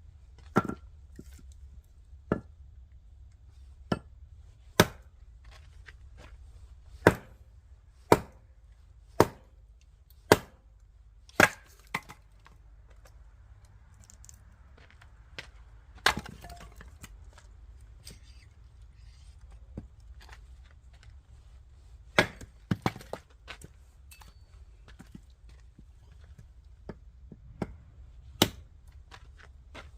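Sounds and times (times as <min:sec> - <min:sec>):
axe chopping firewood: 0:04.8 - 0:05.2, 0:07.0 - 0:07.4, 0:08.0 - 0:08.5, 0:09.1 - 0:10.7, 0:11.3 - 0:12.5, 0:16.0 - 0:17.1, 0:22.1 - 0:24.3, 0:28.4 - 0:28.7.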